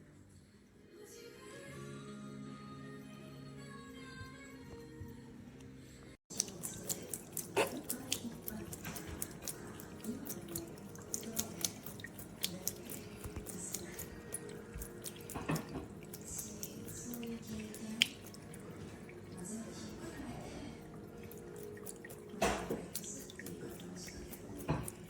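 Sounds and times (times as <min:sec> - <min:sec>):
water dripping and splashing: 0:06.3 - 0:25.0.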